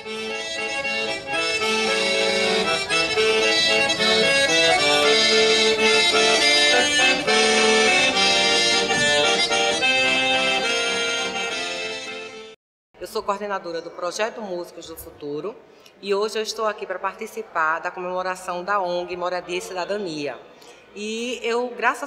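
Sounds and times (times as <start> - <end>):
accordion music: 0.0 - 12.6.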